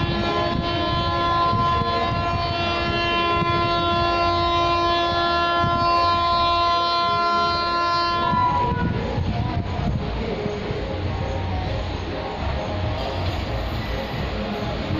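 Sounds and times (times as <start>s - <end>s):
locomotive air horn blast: 0.0s - 9.0s
train rumbling past: 0.0s - 14.9s.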